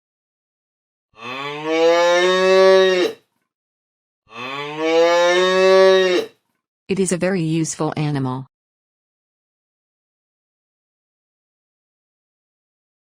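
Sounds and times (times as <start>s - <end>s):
cow mooing: 1.2s - 3.2s, 4.3s - 6.4s.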